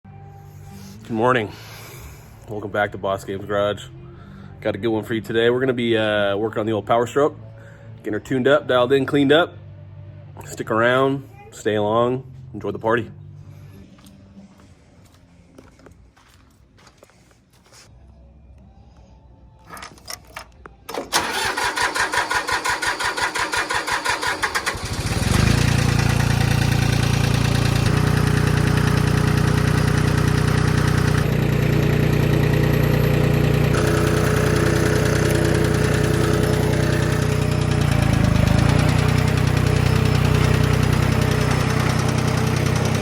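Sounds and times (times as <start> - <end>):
engine starter cranking: 19.7 - 43.0
diesel engine idling: 21.1 - 43.0.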